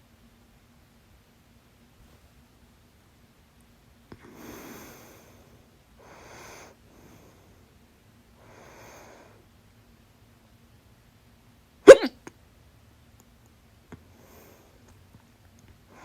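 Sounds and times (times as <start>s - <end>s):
soft noisy breaths: 0.0s - 16.0s
person hiccuping: 11.9s - 12.2s.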